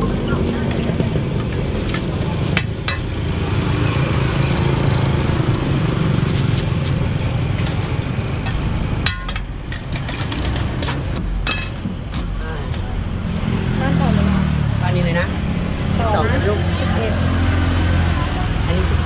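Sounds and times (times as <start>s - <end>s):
sharp clicks and knocks: 7.6s - 12.9s.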